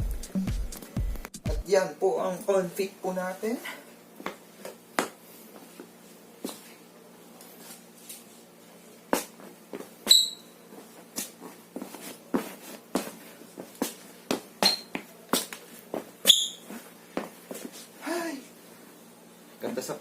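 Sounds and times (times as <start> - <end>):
sneaker soles squeaking: 5.7 - 6.8, 9.2 - 17.9
sneakers tapping on hard floor: 11.8 - 16.4.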